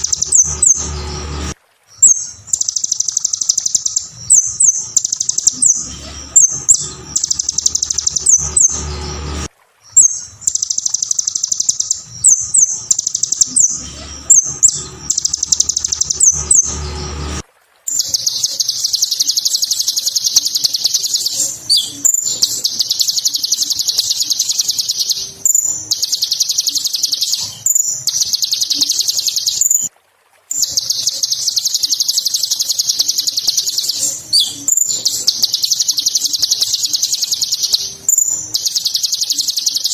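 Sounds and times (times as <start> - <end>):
low hum: 0.0 - 1.6, 4.0 - 9.5, 12.0 - 17.5
bird chattering song: 0.0 - 29.9, 30.5 - 39.9.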